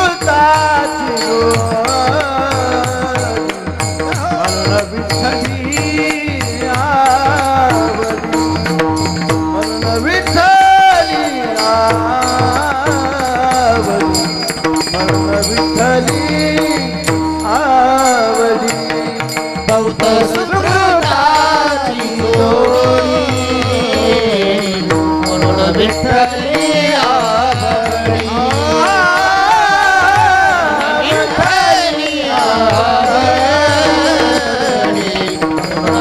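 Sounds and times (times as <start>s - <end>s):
drum beat: 18.7s - 36.0s
person singing long gliding notes: 19.8s - 36.0s.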